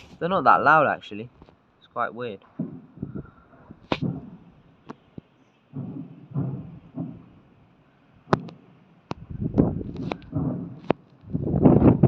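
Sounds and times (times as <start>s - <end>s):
firework sharp cracks: 2.5s - 7.6s, 8.2s - 9.2s, 9.8s - 11.3s
firework dull low booms: 2.5s - 12.0s.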